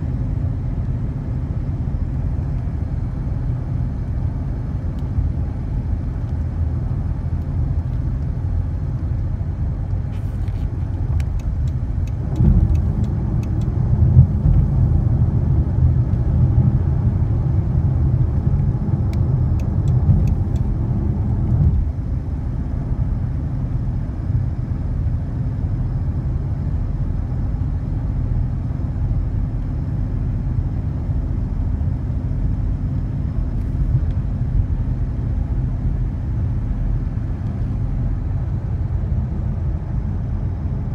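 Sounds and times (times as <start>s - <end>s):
car engine running: 0.0s - 40.9s
engine ticking: 10.8s - 14.9s, 19.1s - 20.8s.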